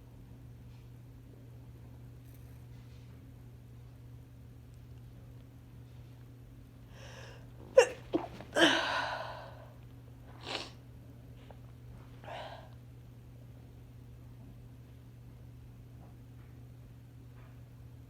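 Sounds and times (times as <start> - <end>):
woman sneezing: 7.8 - 9.5.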